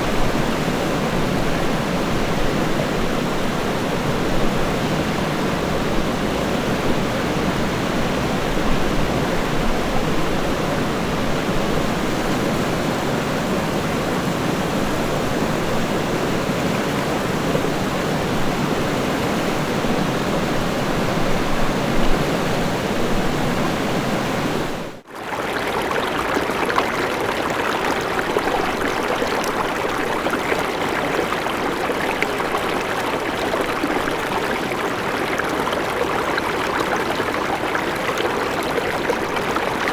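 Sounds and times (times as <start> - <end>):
river water rushing: 21.9 - 39.9.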